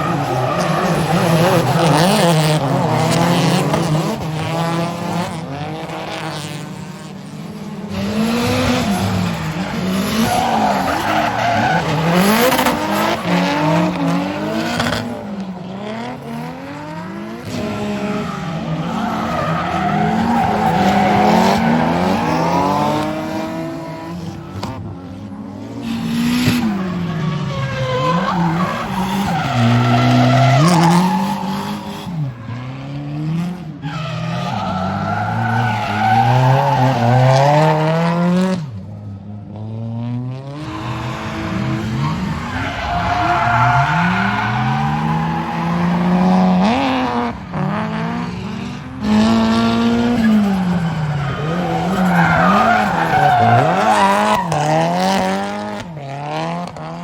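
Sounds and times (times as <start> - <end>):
car engines revving: 0.0 - 57.0
tyres squealing: 50.5 - 54.6.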